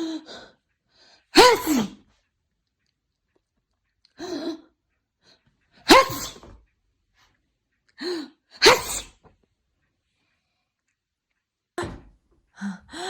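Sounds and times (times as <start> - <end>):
woman sneezing: 1.4 - 2.0, 5.9 - 6.6, 8.6 - 9.2.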